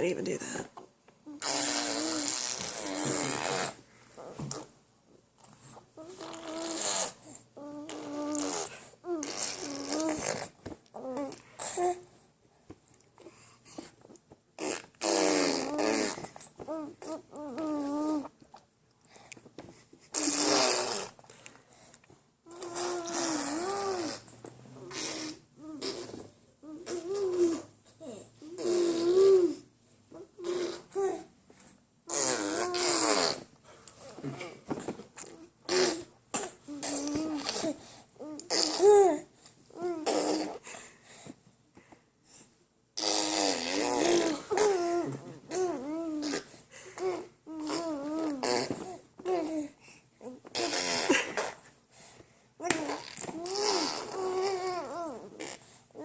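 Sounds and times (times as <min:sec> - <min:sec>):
baby blowing raspberries: 0:01.2 - 0:04.7, 0:05.6 - 0:12.1, 0:14.6 - 0:18.3, 0:20.0 - 0:31.2, 0:32.0 - 0:33.5, 0:35.2 - 0:39.2, 0:39.8 - 0:41.2, 0:43.0 - 0:56.0
baby humming: 0:01.2 - 0:04.7, 0:06.0 - 0:12.1, 0:14.6 - 0:18.3, 0:22.4 - 0:31.3, 0:32.1 - 0:33.5, 0:35.2 - 0:40.7, 0:43.0 - 0:51.3, 0:52.6 - 0:56.0.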